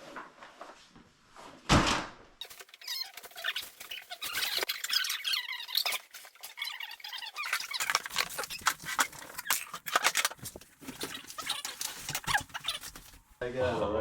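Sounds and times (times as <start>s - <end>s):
high wavering squeaks: 2.4s - 10.2s.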